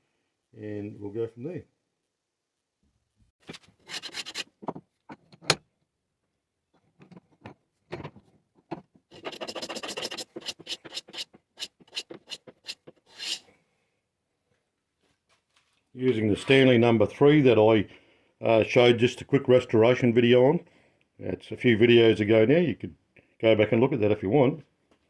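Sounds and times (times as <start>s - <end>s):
hand plane scraping wood: 3.4s - 4.8s, 8.7s - 13.4s.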